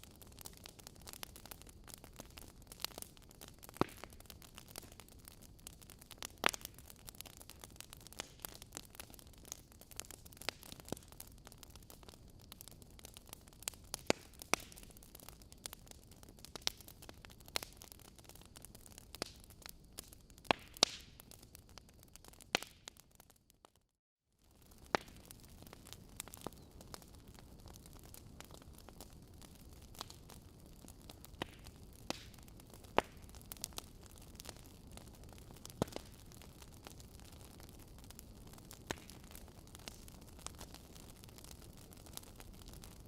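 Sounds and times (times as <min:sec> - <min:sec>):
fire popping loudly: 0:00.0 - 0:23.8, 0:24.4 - 0:43.0
wood fire crackling: 0:00.0 - 0:23.8, 0:24.4 - 0:43.0.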